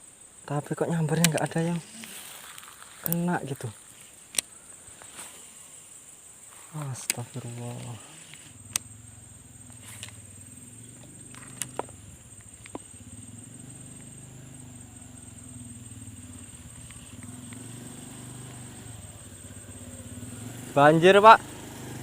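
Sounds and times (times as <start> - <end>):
sharp clicks: 0.9 - 3.6, 4.3 - 4.6, 6.9 - 9.0, 9.7 - 12.9, 16.7 - 17.7
small motorcycle engine running: 7.4 - 22.0.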